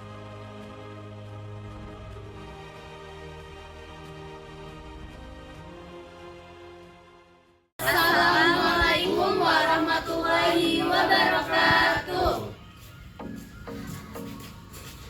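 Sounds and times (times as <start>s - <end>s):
background music: 0.0s - 15.0s
voices singing over music: 7.8s - 12.8s.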